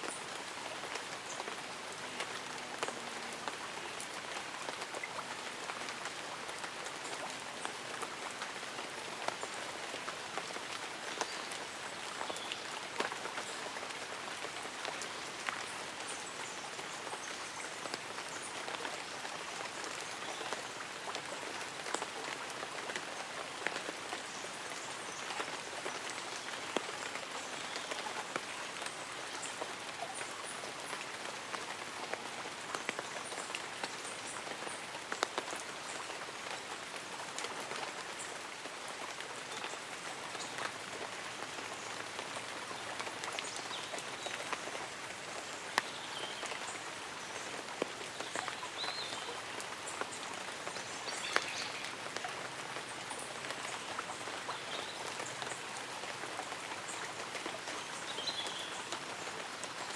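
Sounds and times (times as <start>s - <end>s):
light rain on leaves: 0.0s - 59.9s.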